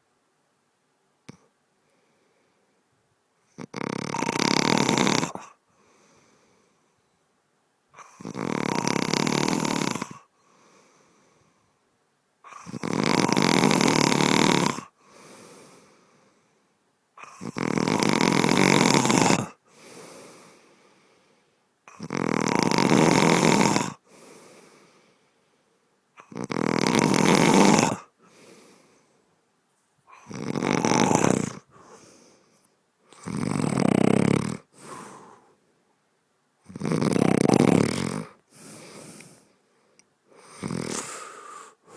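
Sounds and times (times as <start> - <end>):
faint breath sound: 1.3 - 2.8, 5.5 - 7.2, 10.2 - 11.8, 14.9 - 16.8, 19.6 - 21.7, 23.9 - 26.0, 28.1 - 29.4, 31.4 - 35.8, 37.6 - 41.9
person snoring: 3.5 - 5.6, 8.0 - 10.8, 12.4 - 16.4, 17.2 - 20.8, 21.9 - 25.1, 26.2 - 29.1, 30.1 - 32.5, 33.1 - 35.6, 36.6 - 39.5, 40.3 - 41.9.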